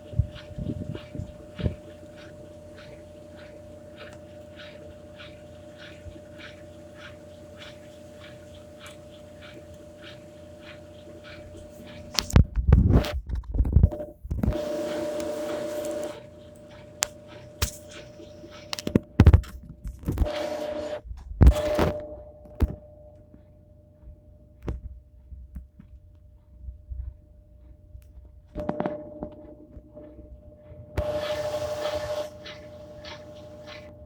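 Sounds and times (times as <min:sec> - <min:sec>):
washing machine churning: 0:00.0 - 0:13.1, 0:14.0 - 0:22.1, 0:28.6 - 0:34.0
washing machine motor hum: 0:00.0 - 0:25.3, 0:28.6 - 0:34.0.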